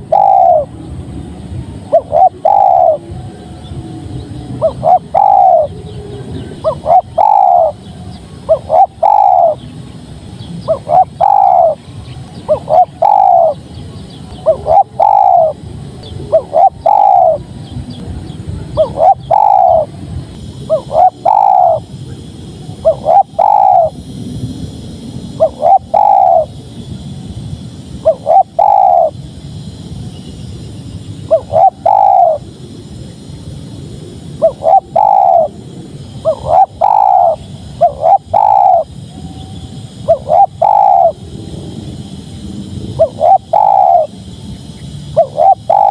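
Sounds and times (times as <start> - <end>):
dove cooing: 0.0 - 0.7, 1.8 - 3.8, 4.4 - 9.6, 10.6 - 11.8, 12.4 - 13.6, 14.4 - 15.6, 16.3 - 17.5, 18.7 - 19.9, 20.5 - 21.9, 22.8 - 24.0, 25.4 - 26.6, 28.0 - 29.2, 31.3 - 32.5, 34.4 - 35.6, 36.2 - 38.9, 40.1 - 41.2, 43.0 - 44.1, 45.2 - 45.9.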